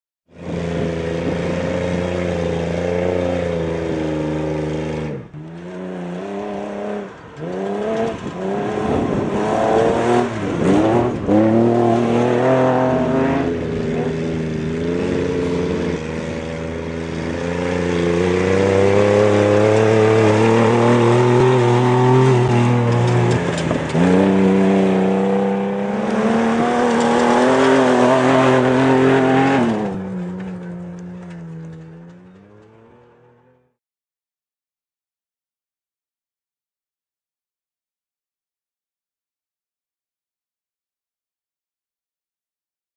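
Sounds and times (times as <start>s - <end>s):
truck engine revving: 0.3s - 33.7s.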